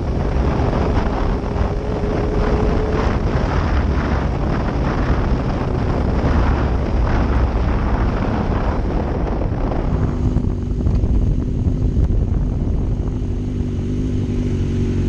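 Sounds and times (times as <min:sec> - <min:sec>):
motorcycle engine running: 0:00.0 - 0:15.0
wind noise on microphone: 0:00.0 - 0:15.0.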